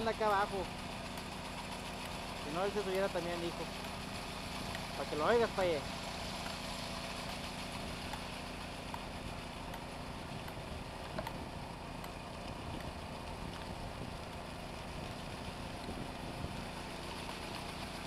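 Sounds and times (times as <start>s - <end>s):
power trowel engine running: 0.0s - 18.0s.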